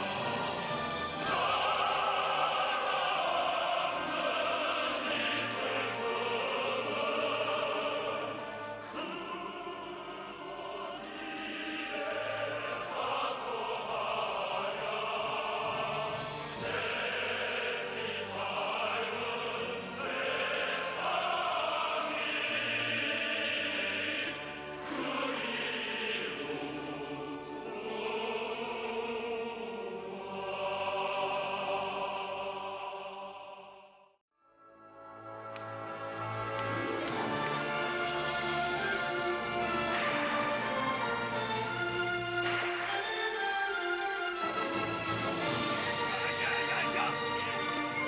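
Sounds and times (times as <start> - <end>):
orchestral accompaniment: 0.0 - 32.2, 34.5 - 48.0
opera singing: 1.1 - 33.9.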